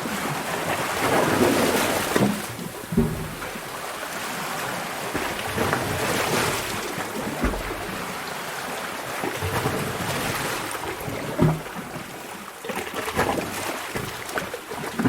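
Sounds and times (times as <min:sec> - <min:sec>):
sea water surging in a cave: 0:00.0 - 0:15.0
low thud: 0:02.9 - 0:03.6.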